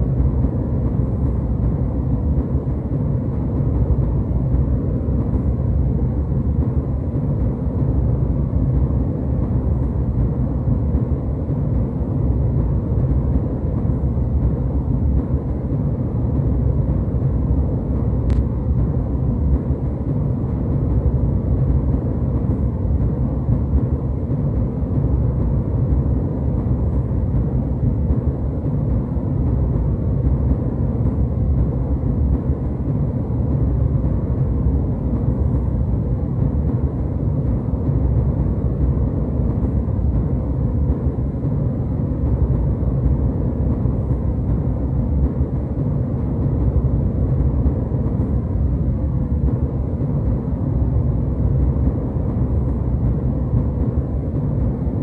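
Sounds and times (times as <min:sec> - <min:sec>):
faint tick: 0:18.3 - 0:18.5.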